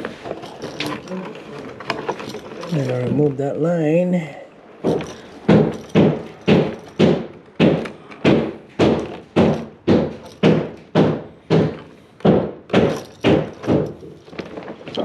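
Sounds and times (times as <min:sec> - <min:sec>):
heavy knocks: 0:04.8 - 0:14.2.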